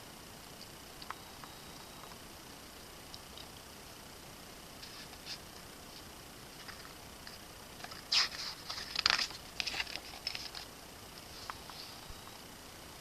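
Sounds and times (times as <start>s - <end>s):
paper pages rustling: 4.8s - 11.9s.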